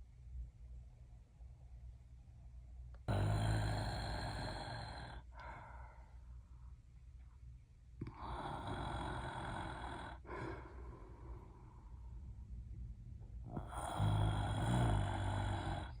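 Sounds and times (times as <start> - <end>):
person snoring: 3.1 - 5.8, 8.0 - 11.6, 13.5 - 16.0.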